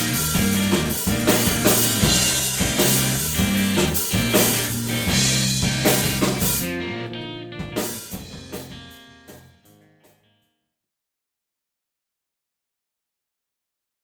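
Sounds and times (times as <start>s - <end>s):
drums and cymbals: 0.0s - 6.8s, 7.6s - 9.5s
electric bass: 0.0s - 9.9s
electric guitar: 0.0s - 10.4s.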